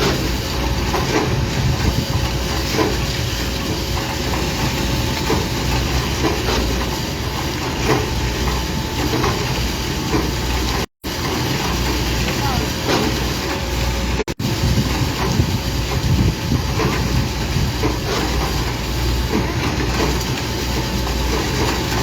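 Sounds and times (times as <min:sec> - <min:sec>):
diesel construction machinery running: 0:00.0 - 0:22.0.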